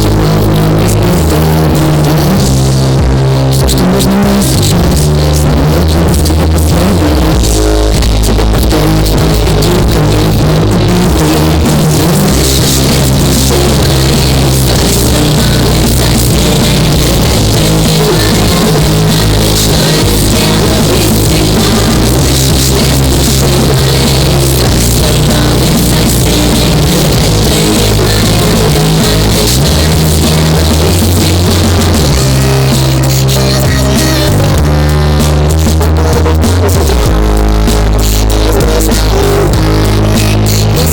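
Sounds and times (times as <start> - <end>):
loud rock music: 0.0 - 40.9.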